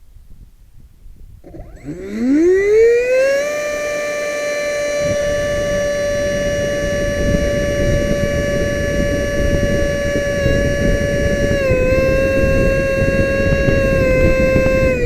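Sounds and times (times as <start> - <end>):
electric ducted fan whine: 0.0 - 15.0.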